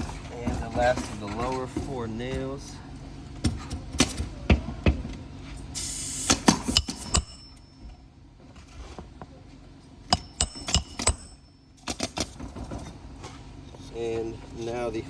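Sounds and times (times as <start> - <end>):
hammer striking nails: 6.3 - 7.6, 10.1 - 12.4.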